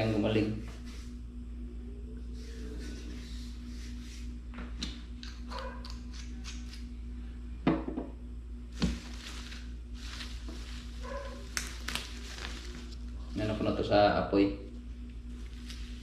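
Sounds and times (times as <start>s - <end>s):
steady low hum: 0.0s - 16.0s
rustling: 8.8s - 13.4s, 15.3s - 16.0s.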